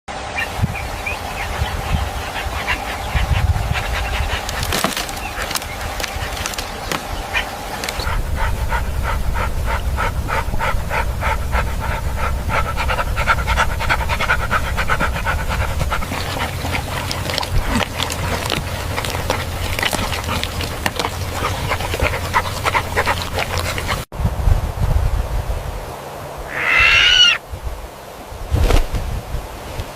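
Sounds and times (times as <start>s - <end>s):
animal panting: 0.7s - 24.1s.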